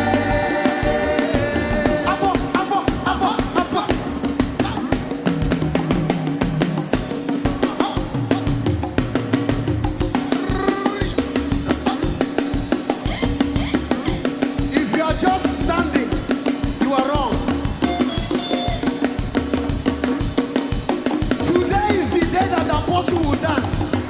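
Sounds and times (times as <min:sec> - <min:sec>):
voices singing or calling out: 0:00.0 - 0:05.2
drum kit fast beat: 0:00.0 - 0:24.0.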